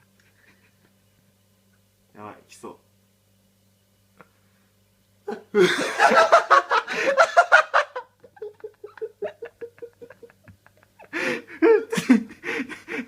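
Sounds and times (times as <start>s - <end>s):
man laughing: 5.3s - 13.0s.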